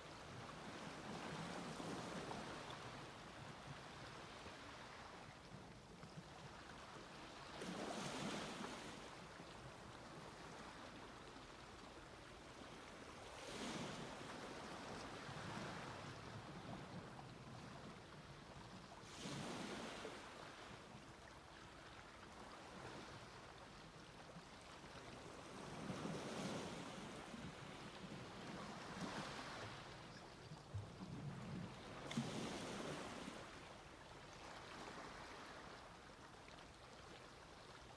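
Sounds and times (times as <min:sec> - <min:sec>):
steady wash of water: 0:31.4 - 0:37.1
sea waves breaking on beach: 0:31.7 - 0:33.8.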